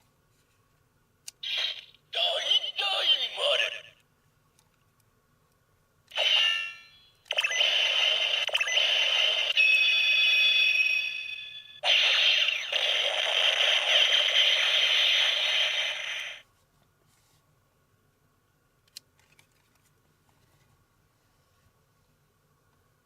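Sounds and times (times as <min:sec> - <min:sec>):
ringing tones: 0:06.2 - 0:07.8
electronic hissing effects: 0:11.8 - 0:16.4.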